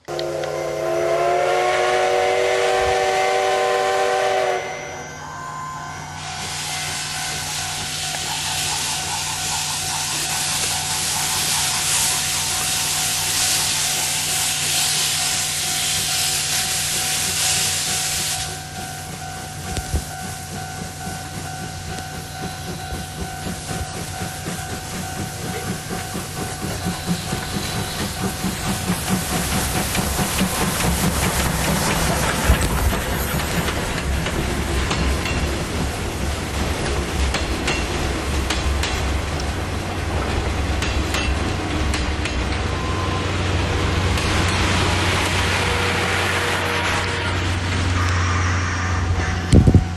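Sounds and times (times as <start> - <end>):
train whistle chord: 0.0 - 8.6, 45.4 - 49.6
steady tone: 3.5 - 10.7
steam hiss: 6.0 - 41.2.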